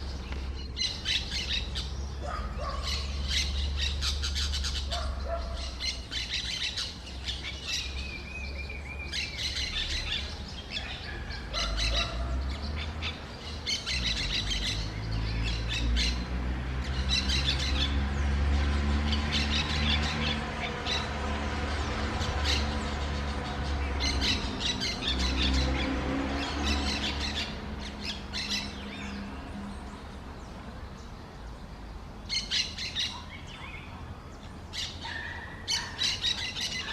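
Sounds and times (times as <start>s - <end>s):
birds chirping: 0.0s - 36.9s.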